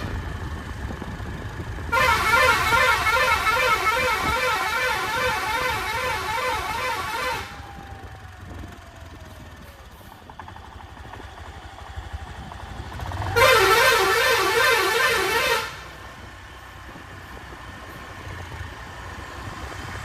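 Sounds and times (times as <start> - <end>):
bus engine running: 0.0 - 20.0
musical air horn tune: 1.9 - 7.6, 13.4 - 16.0.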